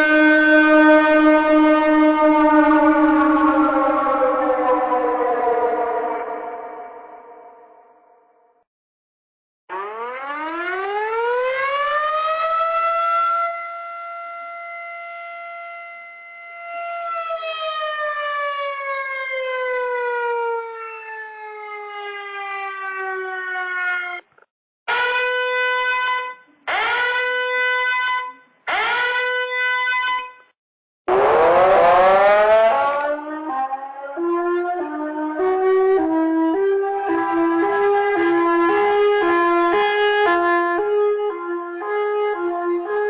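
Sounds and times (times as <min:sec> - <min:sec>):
siren-like creature wail: 0:00.0 - 0:08.1, 0:31.1 - 0:41.5
rising siren sweep: 0:00.0 - 0:08.2, 0:09.7 - 0:24.3, 0:31.1 - 0:43.0.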